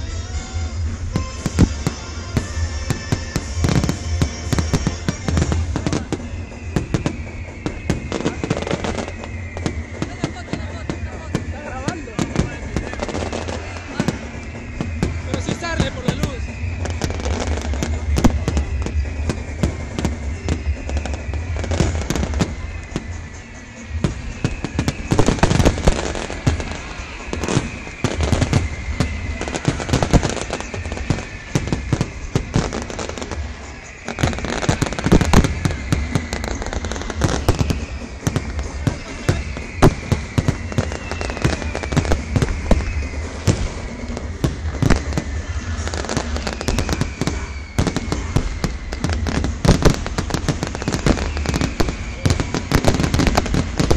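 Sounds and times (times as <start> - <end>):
falling fireworks whistles: 0.0 - 53.9
fireworks bangs and crackling: 0.0 - 53.9.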